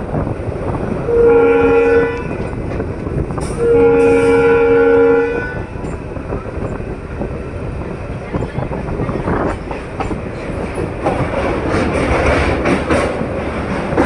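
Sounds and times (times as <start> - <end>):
train rumble and clatter: 0.0 - 14.0
locomotive horn blasts: 1.1 - 2.4, 3.6 - 5.7.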